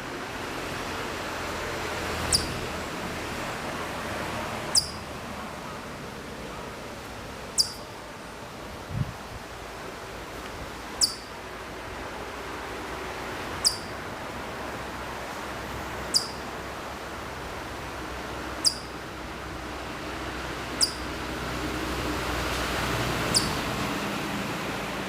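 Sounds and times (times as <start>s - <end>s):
chipmunk chirping: 2.3s - 2.6s, 4.7s - 5.1s, 7.5s - 7.9s, 11.0s - 11.4s, 13.6s - 14.0s, 16.1s - 16.4s, 18.6s - 19.0s, 20.7s - 21.1s, 23.3s - 23.6s.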